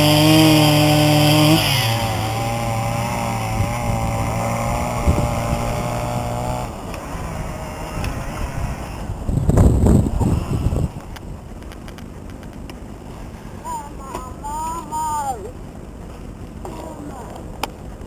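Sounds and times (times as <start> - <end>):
engine running: 0.0 - 11.7.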